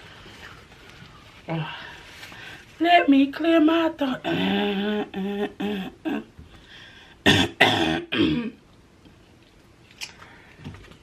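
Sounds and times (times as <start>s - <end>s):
woman clearing her throat: 7.2s - 8.6s.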